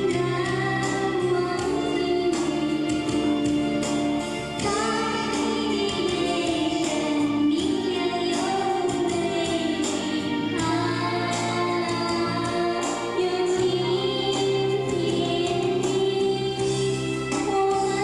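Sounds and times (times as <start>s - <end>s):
instrumental backing music: 0.0s - 18.0s
person singing pop song: 0.0s - 18.0s.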